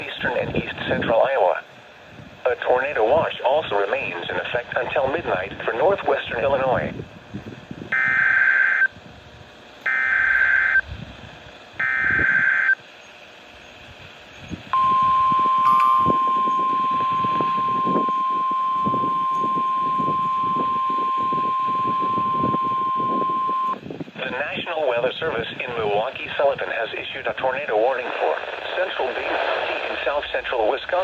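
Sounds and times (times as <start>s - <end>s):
digital data bursts: 14.8s - 23.8s
steady single-pitch alert tone: 14.8s - 23.8s.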